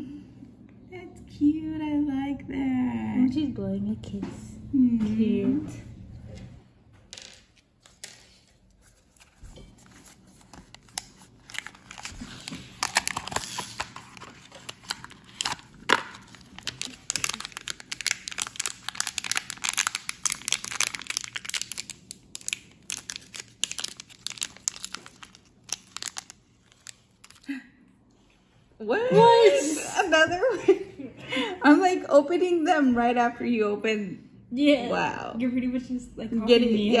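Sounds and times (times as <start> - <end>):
packaging crinkling and tearing: 7.8 - 27.5.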